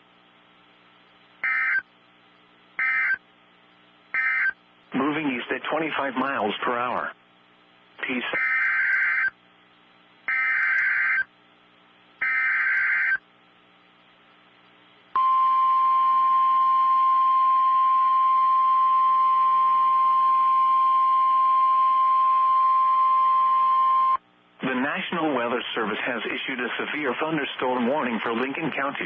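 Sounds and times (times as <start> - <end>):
steady attention tone: 1.4 - 1.9, 15.1 - 24.2.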